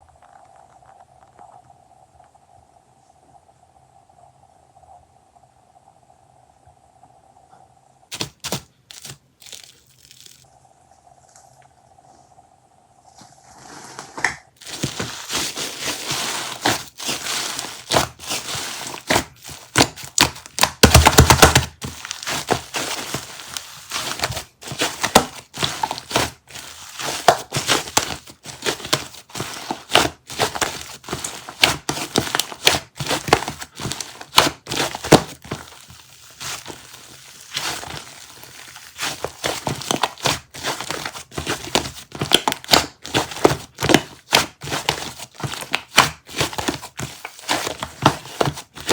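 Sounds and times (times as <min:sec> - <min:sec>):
material crinkling and crackling: 0:08.1 - 0:10.5, 0:13.5 - 0:48.9.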